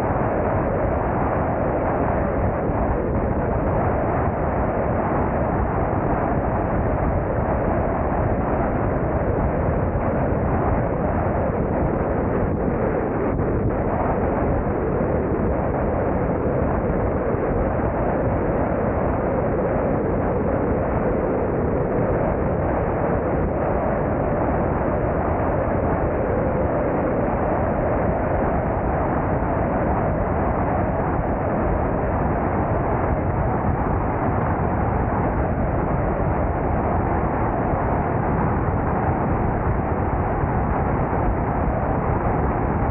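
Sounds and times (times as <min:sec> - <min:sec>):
wind rush: 0:00.0 - 0:42.9.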